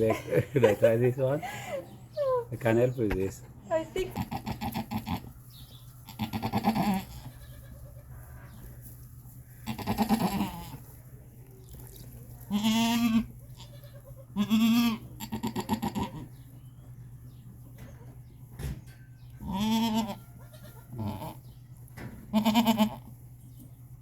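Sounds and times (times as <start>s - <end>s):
goats bleating: 3.8s - 5.4s, 6.0s - 8.3s, 9.6s - 10.9s, 12.5s - 16.4s, 19.4s - 21.5s, 22.3s - 23.1s.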